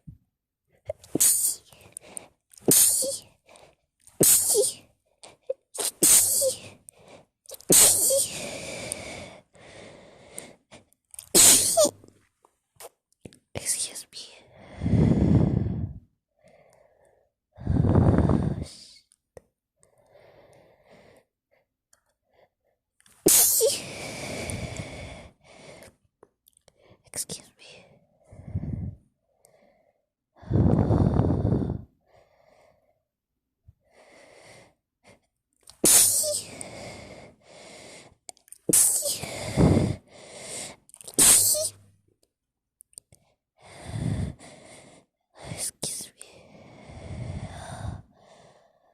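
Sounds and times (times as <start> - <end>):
woman breathing: 1.1 - 11.0, 14.3 - 19.1, 23.5 - 26.1, 27.6 - 33.1, 33.7 - 35.3, 35.9 - 40.9, 43.1 - 48.9
woman sneezing: 2.7 - 3.3, 4.2 - 4.8, 5.8 - 6.7, 7.6 - 8.4, 11.3 - 12.0, 23.3 - 23.9, 35.8 - 36.5, 38.7 - 39.2, 41.1 - 41.8
person gasping in-breaths: 43.6 - 45.6, 46.3 - 48.9.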